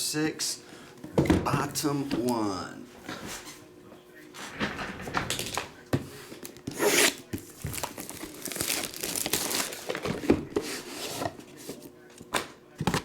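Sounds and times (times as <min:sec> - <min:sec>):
plastic wrap tearing: 0:06.4 - 0:10.2
shrink wrap crinkling: 0:06.4 - 0:10.2.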